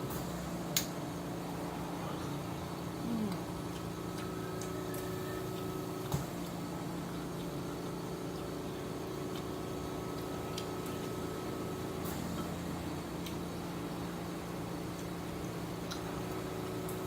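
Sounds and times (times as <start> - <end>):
steady electrical hum: 0.0 - 17.0
mouth eating sounds: 3.0 - 4.7.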